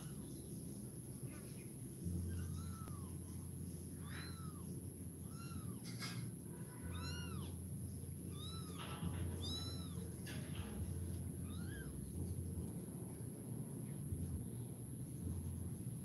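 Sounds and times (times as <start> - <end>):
low hum: 0.0 - 16.0
kitten meowing: 2.2 - 7.6, 8.2 - 10.4, 11.4 - 12.3.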